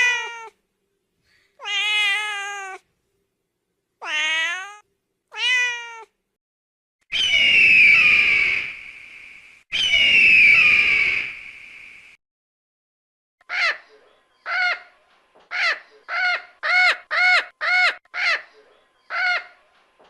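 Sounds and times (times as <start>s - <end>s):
cat meowing: 0.0s - 0.6s, 1.6s - 2.9s, 4.0s - 6.2s.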